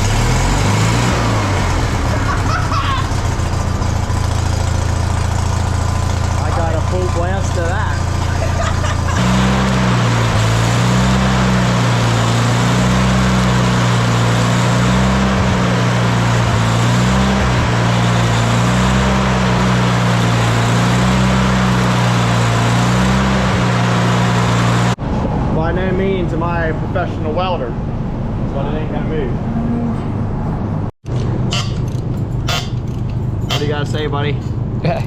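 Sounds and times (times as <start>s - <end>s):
welder engine running: 0.0s - 25.0s.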